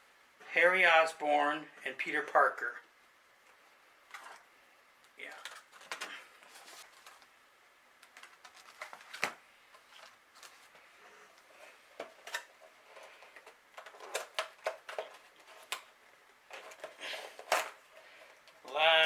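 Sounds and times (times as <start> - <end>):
packaging rustling: 5.3 - 7.3, 8.0 - 18.8.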